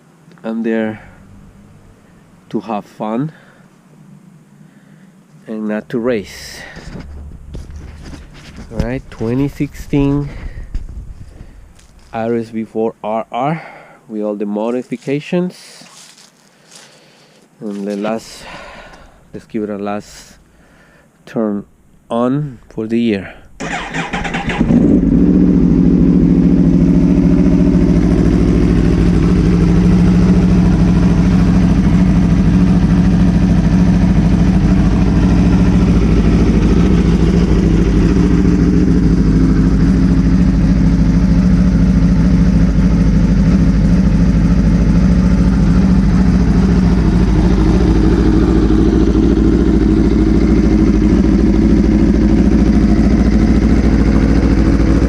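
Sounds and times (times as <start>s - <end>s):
motorcycle engine idling: 0.7s - 2.5s, 5.7s - 12.5s, 23.4s - 55.0s.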